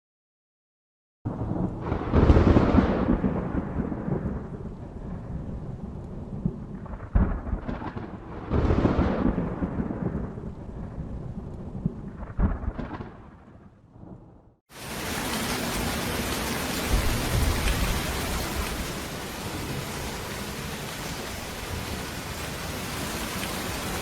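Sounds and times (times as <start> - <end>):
thunder: 1.3 - 15.1, 16.7 - 18.9.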